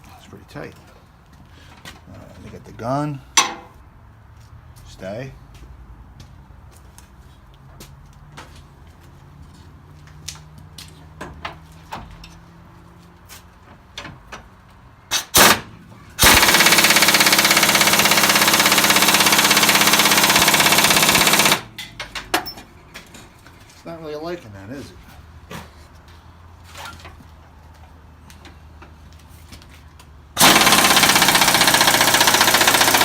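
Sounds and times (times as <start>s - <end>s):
impact wrench hammering: 3.4s - 3.8s, 16.2s - 22.6s, 30.4s - 33.0s.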